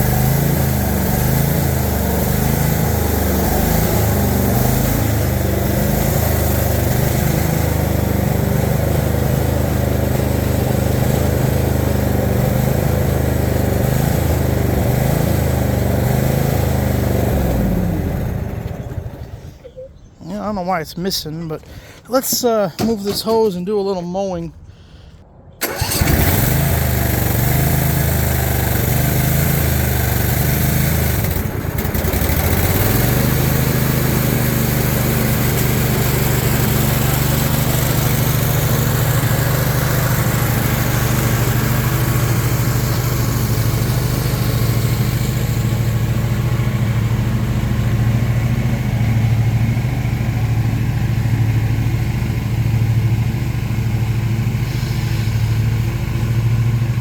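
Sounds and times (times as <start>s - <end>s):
mower engine running: 0.0s - 19.6s, 25.6s - 57.0s
person speaking: 19.6s - 25.1s.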